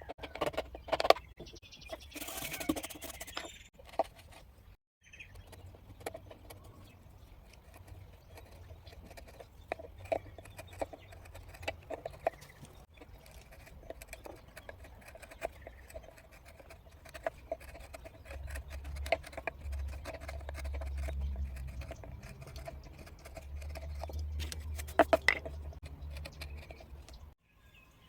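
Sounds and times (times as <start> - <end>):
chisel scraping wood: 5.4 - 27.2.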